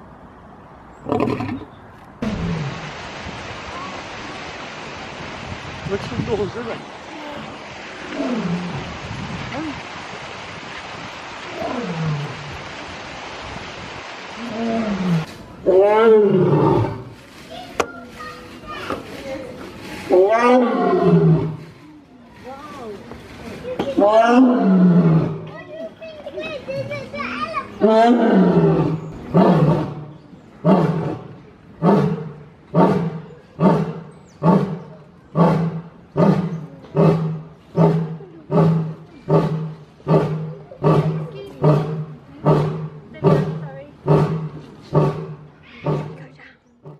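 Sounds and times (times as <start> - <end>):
lion roaring: 14.4 - 17.1, 20.1 - 21.7, 24.0 - 25.5, 27.8 - 30.0, 30.6 - 46.2.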